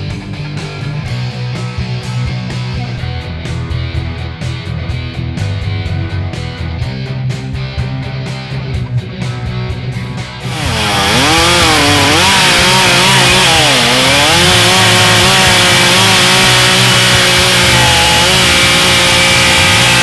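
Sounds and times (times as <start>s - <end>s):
chainsaw cutting log: 10.4s - 20.0s.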